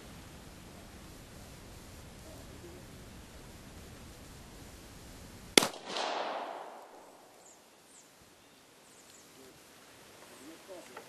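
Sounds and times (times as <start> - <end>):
pistol shot with echo: 5.6 - 7.4.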